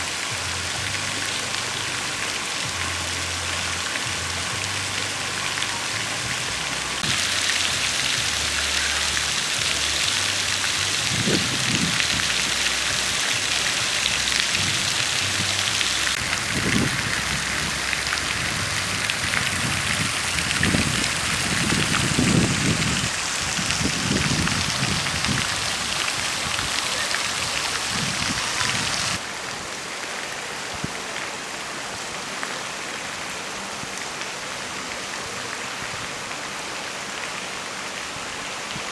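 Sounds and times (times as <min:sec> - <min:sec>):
falling water hiss: 0:00.0 - 0:38.9.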